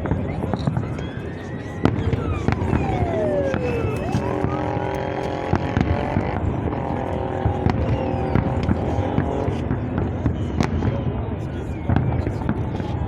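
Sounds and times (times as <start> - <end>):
firework whistling downward: 0.0 - 6.5, 7.5 - 9.6
firework bangs and pops: 1.8 - 11.3, 11.9 - 13.0.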